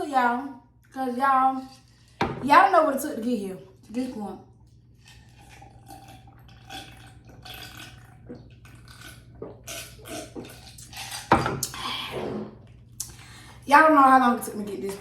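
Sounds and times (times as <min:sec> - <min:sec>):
wet chewing: 0:05.0 - 0:11.8.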